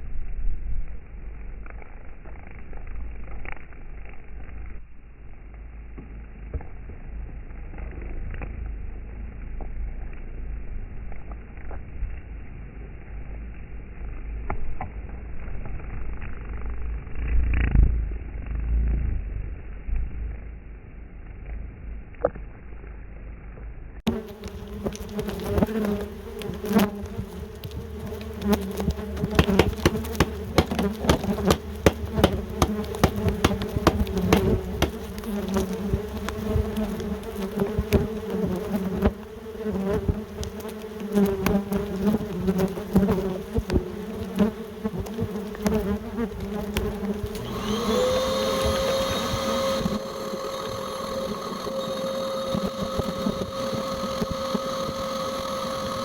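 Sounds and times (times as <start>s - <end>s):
yellow jackets buzzing: 24.1s - 56.0s
high-pitched machine-like hum: 47.4s - 56.0s.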